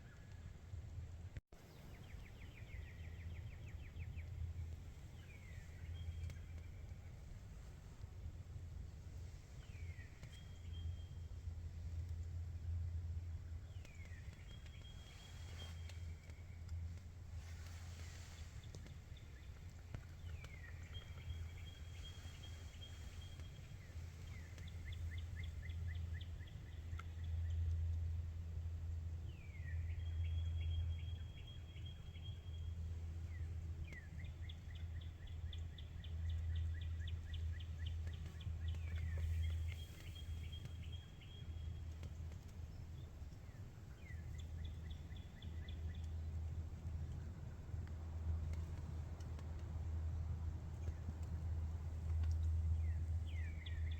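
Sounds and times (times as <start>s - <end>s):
steady low rumble: 0.0s - 53.9s
songbird singing trills: 1.6s - 7.4s, 13.5s - 28.2s, 29.2s - 47.6s, 52.1s - 53.9s.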